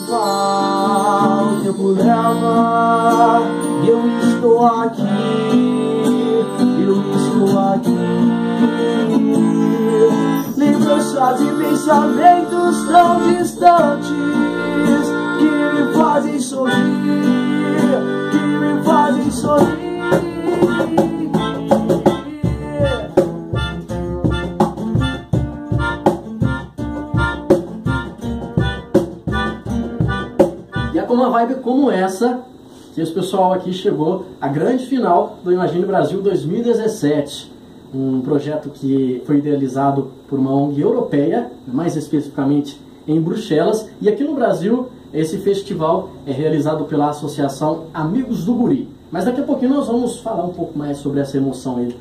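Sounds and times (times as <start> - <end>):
person singing: 0.0 - 23.4
reggae band playing: 0.0 - 31.2
guitar: 0.0 - 52.0.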